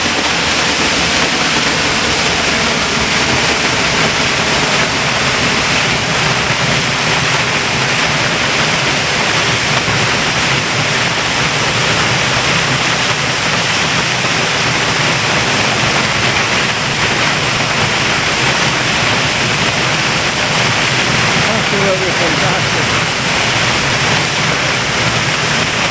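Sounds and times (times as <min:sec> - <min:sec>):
waterfall rushing: 0:00.0 - 0:25.9.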